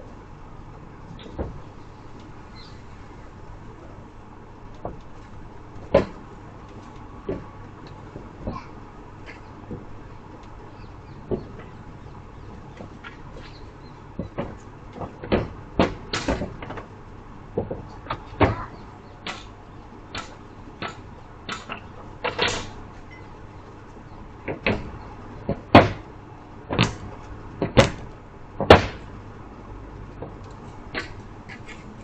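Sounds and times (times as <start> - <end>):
sharp knocks and clunks: 1.2 - 1.7, 4.7 - 10.5, 11.1 - 16.9, 17.5 - 23.3, 24.4 - 26.1, 26.7 - 29.2, 30.1 - 31.9.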